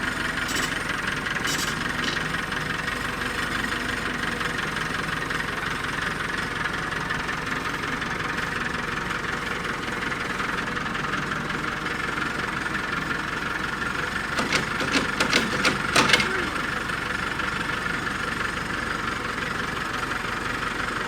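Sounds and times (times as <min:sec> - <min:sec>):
tractor engine idling: 0:00.0 - 0:21.0
sharp clicks or knocks: 0:14.4 - 0:16.7.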